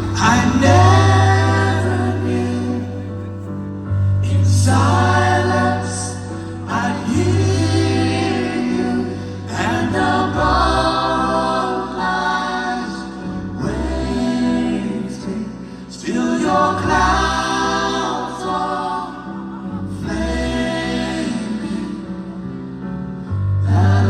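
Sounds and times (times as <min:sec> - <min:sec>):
deep bass line: 0:00.0 - 0:05.2
wordless vocal harmonies: 0:00.0 - 0:24.0.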